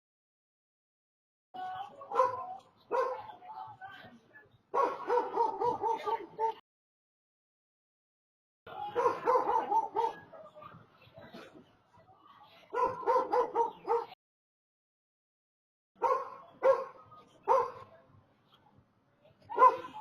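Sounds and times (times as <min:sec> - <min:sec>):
dog barking: 0:02.1 - 0:03.4, 0:04.7 - 0:06.6, 0:08.8 - 0:10.3, 0:12.7 - 0:14.2, 0:16.0 - 0:17.9, 0:19.5 - 0:20.0.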